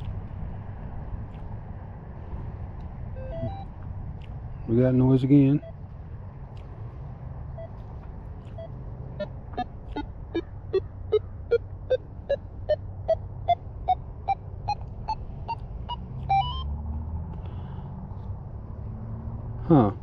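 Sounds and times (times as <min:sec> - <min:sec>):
metal detector rising beeps: 0:03.2 - 0:03.7, 0:15.5 - 0:16.6.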